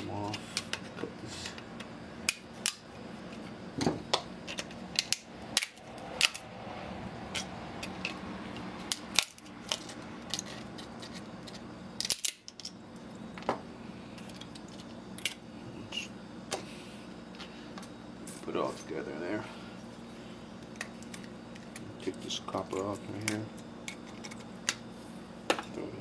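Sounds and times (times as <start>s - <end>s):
steady low hum: 0.0s - 26.0s
small parts clicking and clinking: 7.3s - 12.8s.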